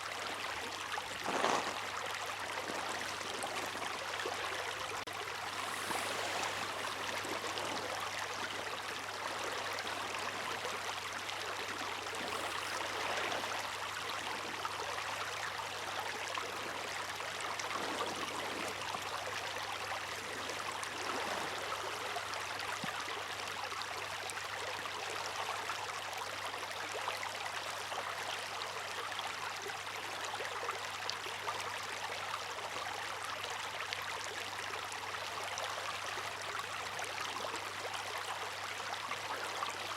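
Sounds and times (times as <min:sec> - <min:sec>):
water rushing and splashing: 0:00.0 - 0:22.6.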